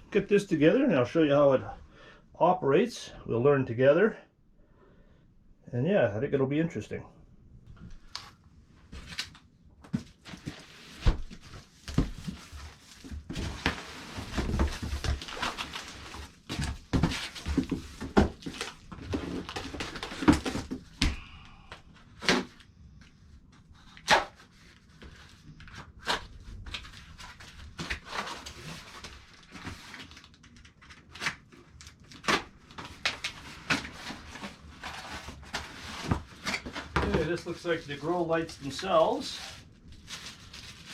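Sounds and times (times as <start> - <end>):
cardboard packaging rustling: 8.0 - 21.0, 23.8 - 40.9.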